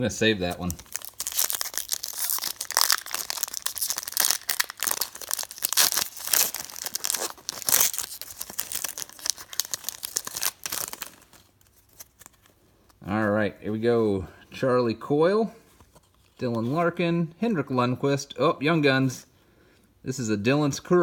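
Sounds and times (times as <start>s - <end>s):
foil wrapper tearing and crinkling: 0.4s - 12.5s.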